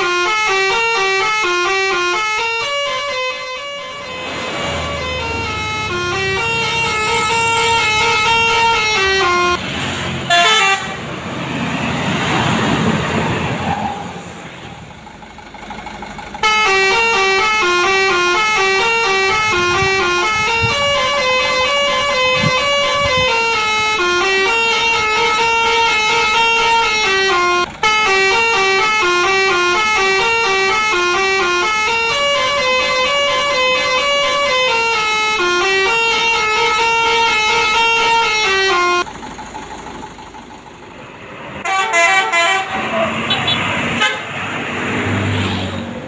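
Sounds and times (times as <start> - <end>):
multi-tone bus horn melody: 0.0 - 14.2, 16.3 - 39.1, 41.6 - 45.2
rushing noise: 3.9 - 14.9.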